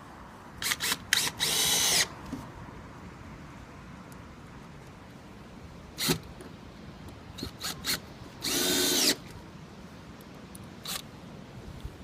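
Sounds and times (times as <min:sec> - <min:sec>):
power drill driving screw into wood: 0:00.6 - 0:02.1, 0:06.0 - 0:06.2, 0:07.4 - 0:09.2.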